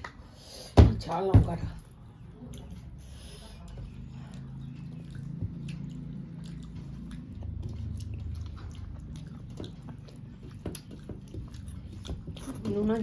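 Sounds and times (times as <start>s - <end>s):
low steady hum: 0.9s - 13.0s
person chewing food: 1.9s - 13.0s.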